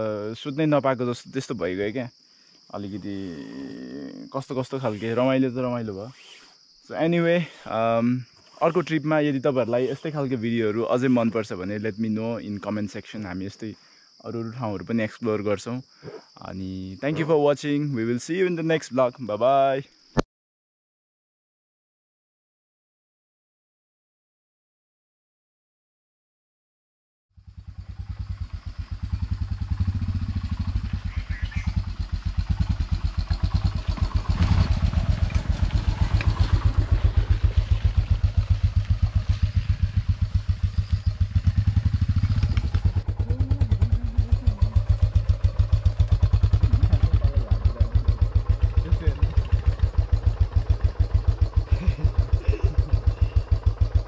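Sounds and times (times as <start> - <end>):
motorcycle engine idling: 27.4 - 54.0.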